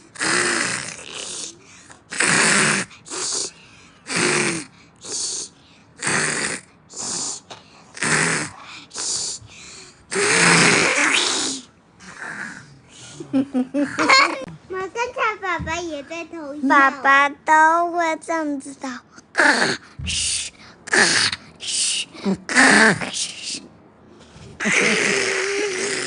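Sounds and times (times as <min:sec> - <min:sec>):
child imitating snoring: 0:00.0 - 0:09.4, 0:10.1 - 0:12.7, 0:19.3 - 0:23.4, 0:24.6 - 0:26.0.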